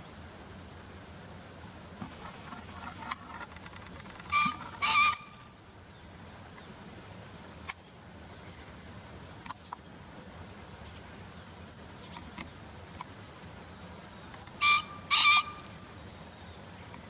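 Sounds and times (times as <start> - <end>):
pheasant crowing: 4.1 - 5.6, 14.5 - 16.0.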